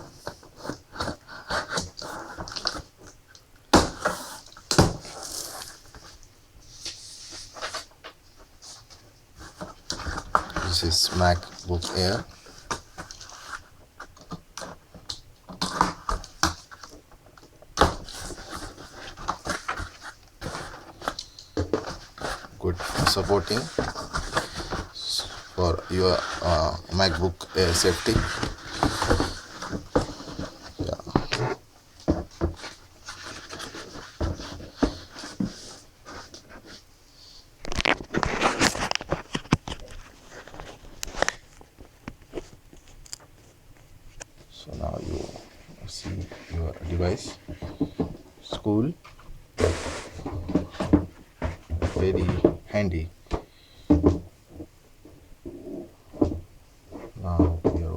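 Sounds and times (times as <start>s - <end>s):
packaging crinkling and rustling: 7.4s - 36.8s, 37.6s - 44.4s
packaging clicks and scrapes: 9.4s - 31.6s, 37.6s - 43.5s, 49.0s - 52.4s.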